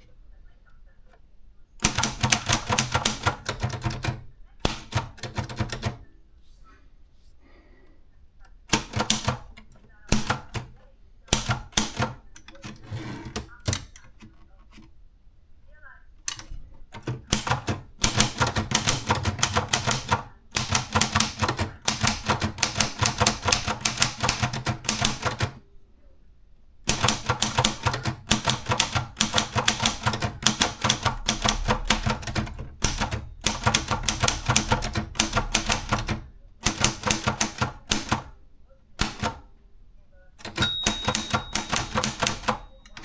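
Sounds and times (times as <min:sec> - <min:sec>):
typewriter key strikes: 0:01.8 - 0:06.0, 0:08.7 - 0:14.1, 0:16.3 - 0:25.6, 0:26.9 - 0:38.3, 0:39.0 - 0:39.4, 0:40.4 - 0:43.0.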